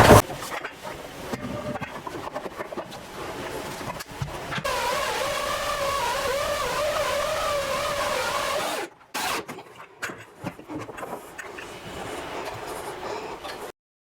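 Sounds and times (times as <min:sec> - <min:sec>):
small motor whining: 0:04.7 - 0:09.4.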